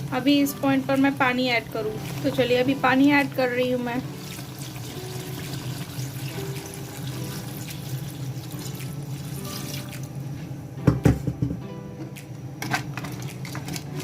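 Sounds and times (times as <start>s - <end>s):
water pouring into a pot: 4.0s - 10.1s.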